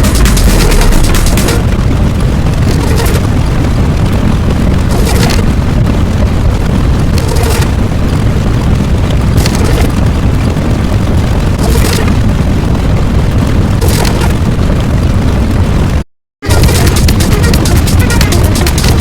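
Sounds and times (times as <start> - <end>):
booming rumble: 0.0 - 19.0.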